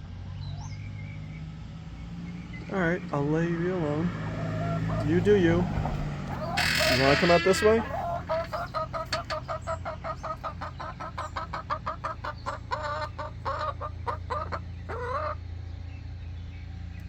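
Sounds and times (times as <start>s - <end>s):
hen cackling: 3.8s - 15.5s.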